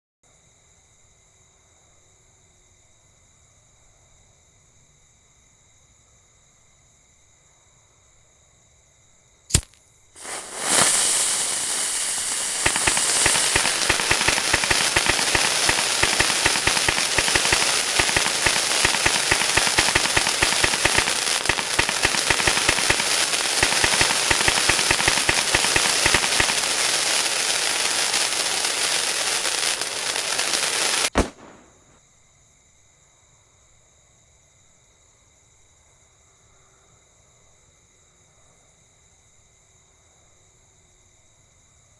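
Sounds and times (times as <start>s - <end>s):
firework crack: 9.5s - 32.0s
firework hiss: 9.5s - 32.0s
rapid crackling pops: 9.5s - 32.0s.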